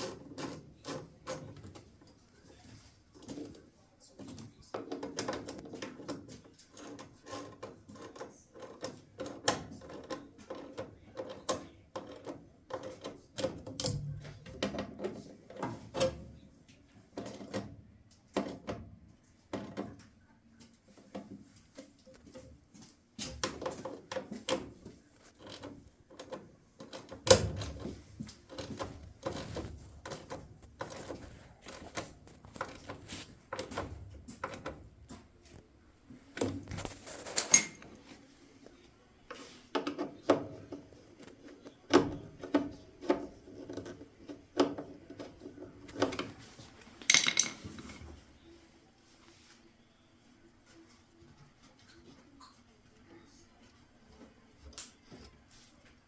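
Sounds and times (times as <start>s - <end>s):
metal parts clicking and rattling: 47.0s - 48.1s.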